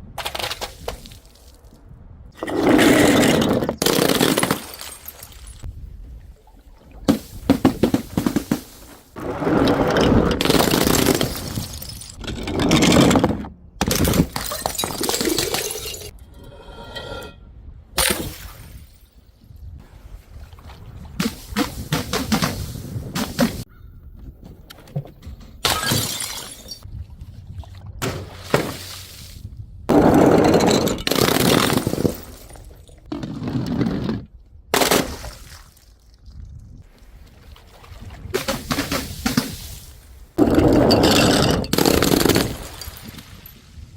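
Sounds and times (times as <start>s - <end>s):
glass breaking and crunching: 3.6s - 5.6s, 10.4s - 12.9s, 13.8s - 16.1s, 25.6s - 26.8s, 40.6s - 43.6s.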